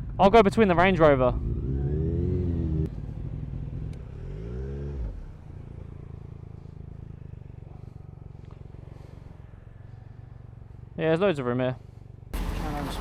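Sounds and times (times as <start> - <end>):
motorcycle engine revving and idling: 0.0 - 13.0.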